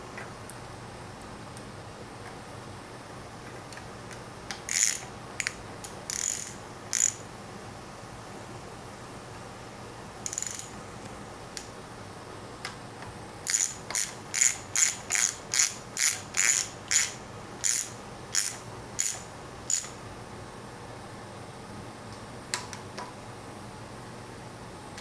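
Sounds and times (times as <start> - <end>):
ratchet wrench clicking: 4.5 - 7.2, 10.2 - 10.8, 13.5 - 20.0.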